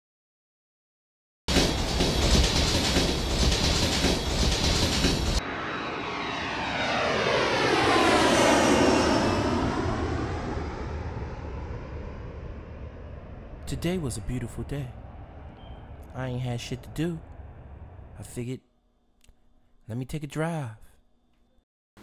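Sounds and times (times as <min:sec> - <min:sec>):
loud even rushing noise: 0:01.5 - 0:18.2
aircraft passing overhead: 0:01.6 - 0:18.4.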